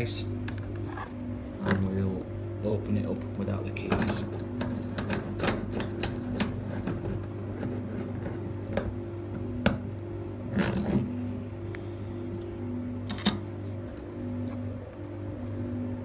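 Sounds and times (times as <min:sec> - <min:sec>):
steady low hum: 0:00.0 - 0:16.0
metal clicks and clinks: 0:03.9 - 0:07.3.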